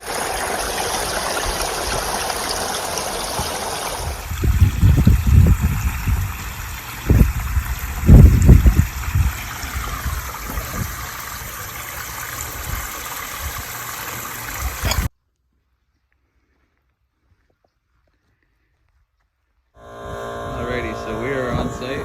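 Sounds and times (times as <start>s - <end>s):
waterfall splashing rush: 0.0s - 4.3s
heavy low rumbles: 19.8s - 22.0s.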